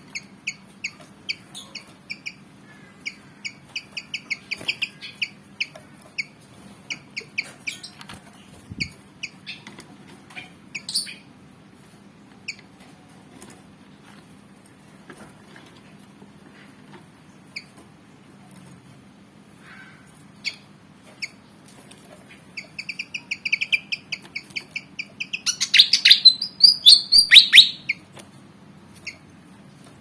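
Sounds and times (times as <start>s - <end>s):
bird chip calls: 0.1s - 8.0s, 22.6s - 28.0s.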